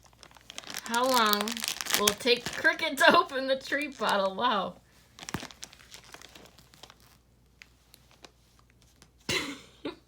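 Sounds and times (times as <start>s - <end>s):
plastic bag crinkling: 0.0s - 9.1s.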